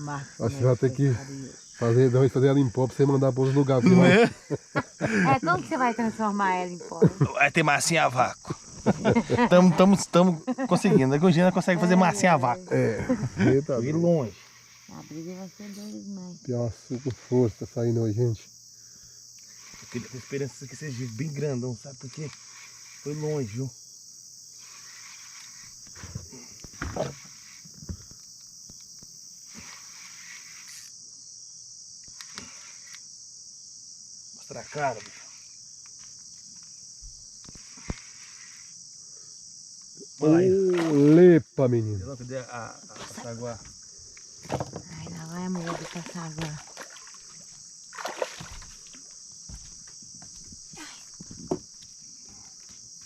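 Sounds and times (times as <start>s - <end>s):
crickets chirping: 0.0s - 53.0s
high-pitched insect chorus: 0.0s - 53.0s
knocks and thumps: 26.0s - 28.1s, 44.4s - 45.7s, 49.5s - 51.8s.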